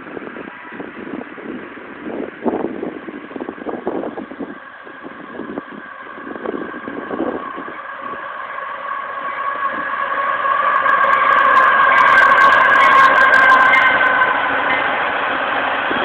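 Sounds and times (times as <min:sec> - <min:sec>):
wind on microphone: 0:00.0 - 0:08.4
diesel locomotive engines: 0:00.0 - 0:16.0.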